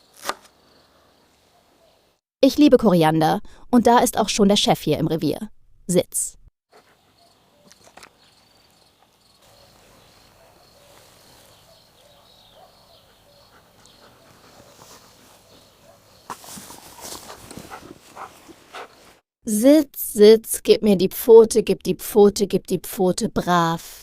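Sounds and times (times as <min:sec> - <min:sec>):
faint dog sounds: 0:09.4 - 0:19.2
rustles and clicks: 0:14.4 - 0:19.2.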